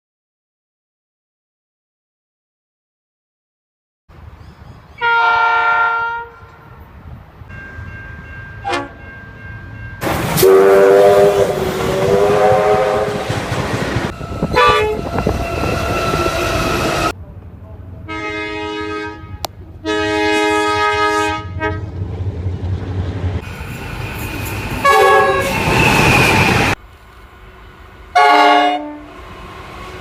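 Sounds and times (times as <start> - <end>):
passing train rushing: 4.1 - 30.0
train horn blasts: 5.0 - 6.9, 8.6 - 9.1, 10.0 - 13.4, 14.1 - 17.1, 18.1 - 21.9, 24.8 - 25.7, 28.1 - 29.1.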